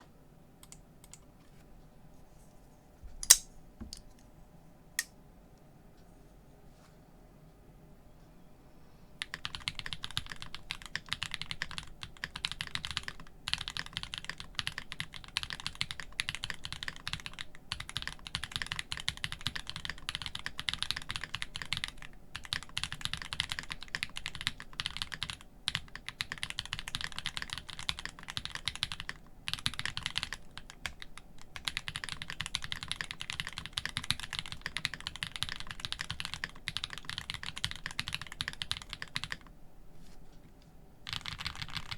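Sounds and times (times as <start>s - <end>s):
mechanical keyboard typing: 9.2s - 39.5s, 41.1s - 41.9s.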